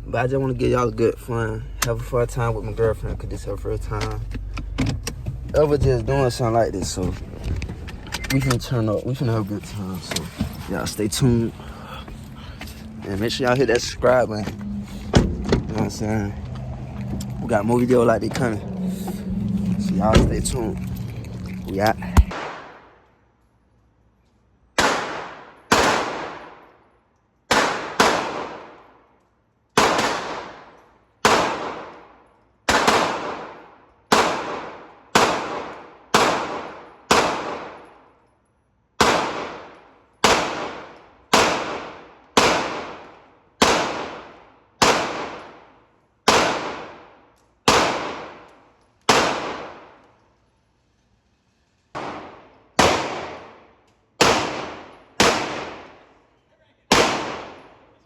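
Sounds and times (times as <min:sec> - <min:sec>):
handgun shots: 0:24.8 - 0:26.6, 0:27.5 - 0:28.8, 0:29.8 - 0:32.0, 0:32.7 - 0:37.9, 0:39.0 - 0:45.6, 0:46.3 - 0:47.0, 0:47.7 - 0:48.5, 0:49.1 - 0:50.0, 0:52.0 - 0:53.6, 0:54.2 - 0:56.0, 0:56.9 - 0:57.7.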